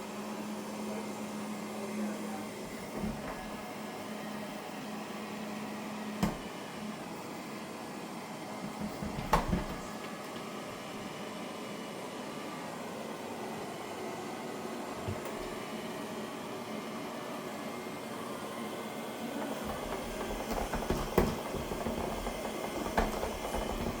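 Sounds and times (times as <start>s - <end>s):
robot vacuum humming: 0.4s - 24.0s
robot vacuum knocks: 6.2s - 6.5s, 19.7s - 24.0s.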